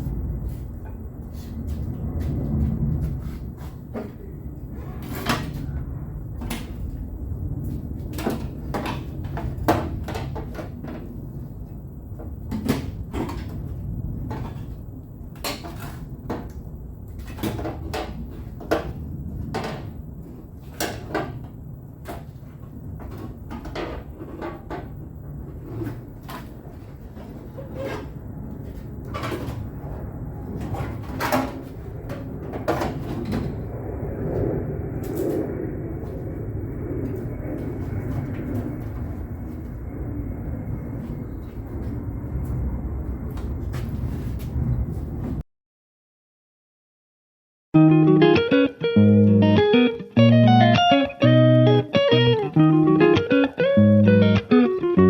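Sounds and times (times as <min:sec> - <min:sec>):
steady low hum: 0:00.0 - 0:45.4, 0:47.8 - 0:55.0
metal panel knocking and clattering: 0:08.1 - 0:11.2.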